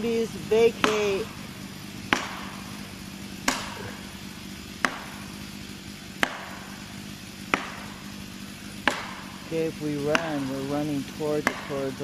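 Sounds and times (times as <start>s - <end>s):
maul striking steel wedge: 0.7s - 5.4s, 6.1s - 9.5s, 11.4s - 12.0s.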